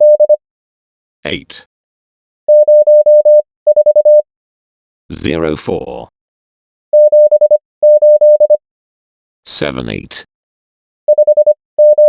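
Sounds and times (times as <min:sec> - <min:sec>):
morse code beeps: 0:00.0 - 0:00.4, 0:02.5 - 0:04.2, 0:07.0 - 0:08.6, 0:11.1 - 0:12.0
person speaking: 0:01.2 - 0:01.7, 0:09.5 - 0:10.3.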